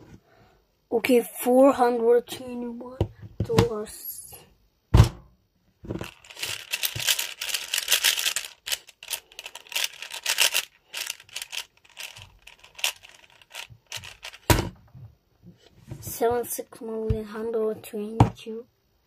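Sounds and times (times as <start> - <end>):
plastic puzzle cube clicking: 6.0 - 14.5.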